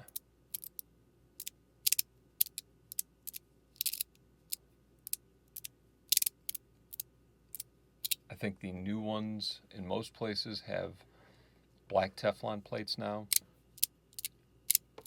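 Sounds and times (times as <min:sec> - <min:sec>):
metal fidget slider clicking: 0:00.1 - 0:00.8, 0:01.4 - 0:04.0, 0:05.6 - 0:07.0.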